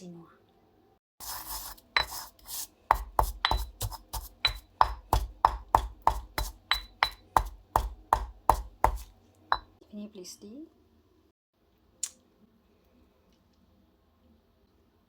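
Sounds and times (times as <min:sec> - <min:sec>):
rustling scrape: 0:01.2 - 0:02.7
knife chopping on cutting board: 0:02.0 - 0:09.7.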